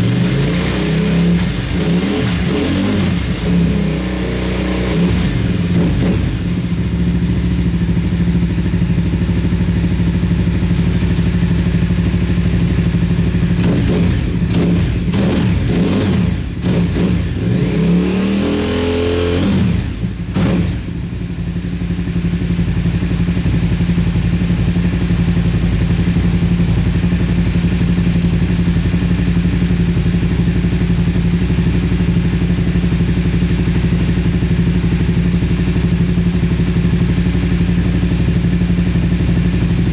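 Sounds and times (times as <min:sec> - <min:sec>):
motorcycle engine idling and revving: 0:00.0 - 0:39.9.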